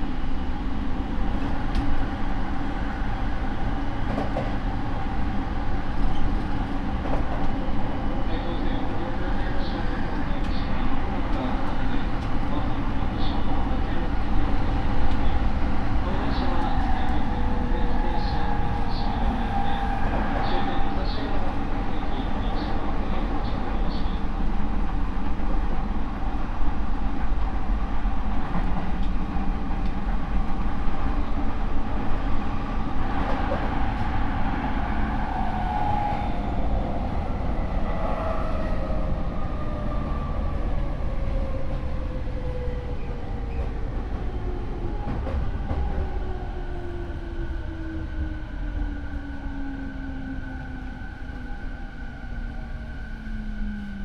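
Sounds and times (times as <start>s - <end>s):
wheels rumbling on rail: 0.0s - 54.0s.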